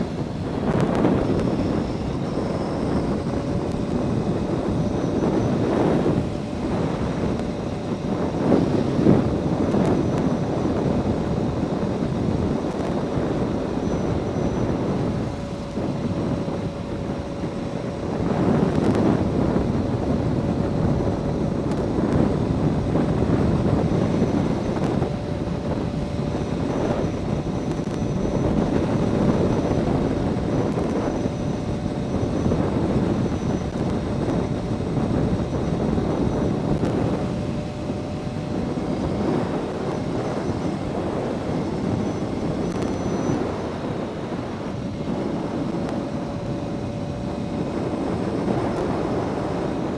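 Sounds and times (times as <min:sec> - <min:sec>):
motorcycle engine running: 0:00.0 - 0:49.9
wind noise over microphone: 0:00.0 - 0:49.9.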